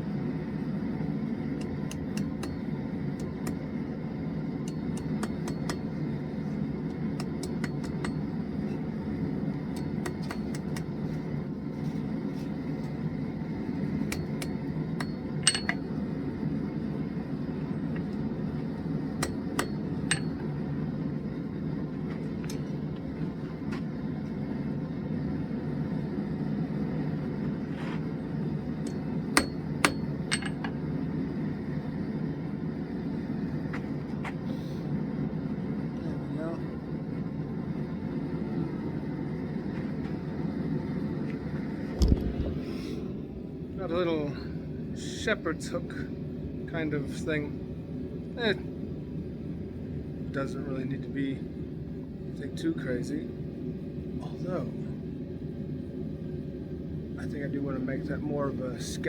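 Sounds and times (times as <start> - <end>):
forge running: 0.0 - 59.0
hammer tapping steel on anvil: 1.6 - 3.6, 4.6 - 5.9, 6.9 - 8.3, 9.7 - 10.9, 14.1 - 15.9, 19.2 - 20.5, 28.8 - 30.8.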